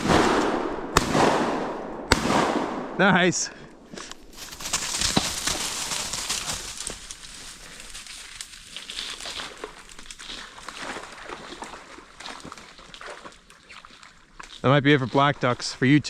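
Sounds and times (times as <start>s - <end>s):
rustling and crinkling: 3.9s - 15.2s.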